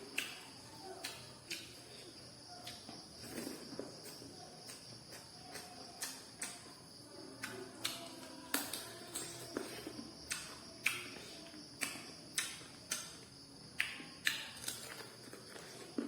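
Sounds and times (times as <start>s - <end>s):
wet chewing and crunching: 7.4s - 16.0s.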